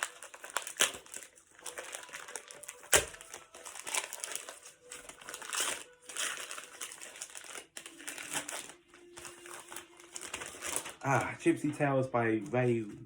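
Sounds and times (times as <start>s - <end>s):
wrapping paper rustling: 0.0s - 13.0s.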